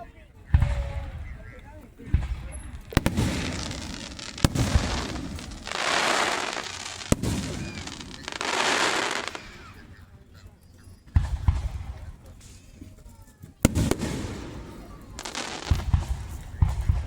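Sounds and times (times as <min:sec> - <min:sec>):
fireworks bang: 0:00.5 - 0:09.8, 0:11.1 - 0:12.4, 0:13.6 - 0:17.0
fireworks rushing noise: 0:00.6 - 0:10.0, 0:13.6 - 0:17.0.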